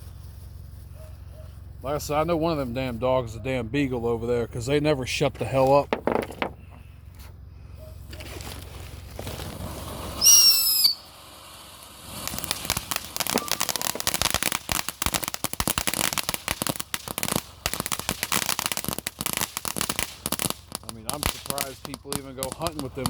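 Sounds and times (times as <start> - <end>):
dense rapid firework crackling: 8.5 - 23.0
firework hiss: 8.6 - 23.0
shrill firework whistle: 10.1 - 11.2, 13.2 - 14.2.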